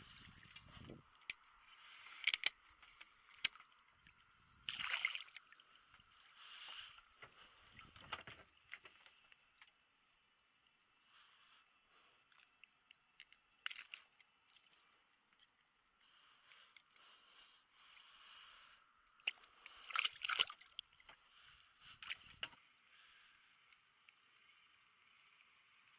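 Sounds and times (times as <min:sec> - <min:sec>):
steady high-pitched hiss: 0:00.0 - 0:25.9.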